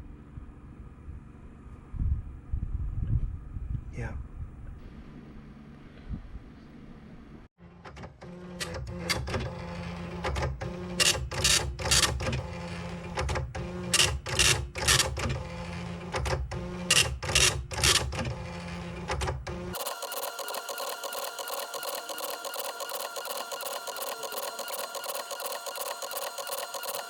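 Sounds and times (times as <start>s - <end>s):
printer mechanical buzz: 7.6s - 27.0s
rasping print head passes: 7.7s - 27.0s.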